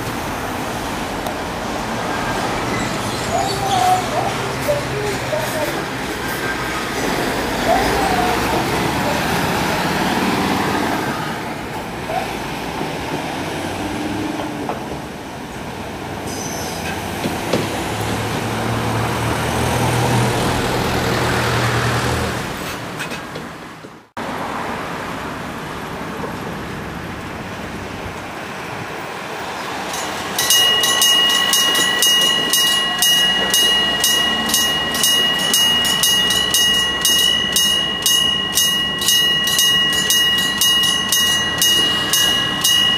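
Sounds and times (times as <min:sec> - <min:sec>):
level crossing warning bell: 0:02.3 - 0:11.3, 0:29.8 - 0:42.9.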